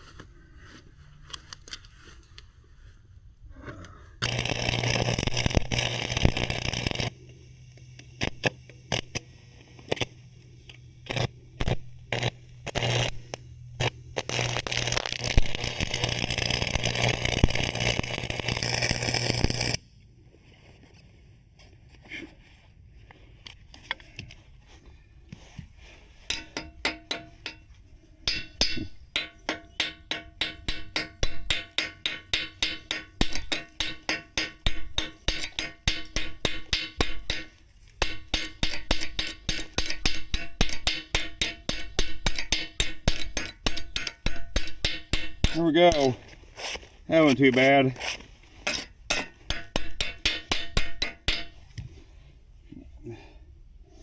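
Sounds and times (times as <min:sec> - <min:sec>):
welder humming: 0:04.2 - 0:19.8, 0:26.3 - 0:46.3, 0:48.7 - 0:51.6
welding arc crackling and hissing: 0:04.2 - 0:19.8, 0:28.3 - 0:51.6
ringing metal taps: 0:28.3 - 0:46.1.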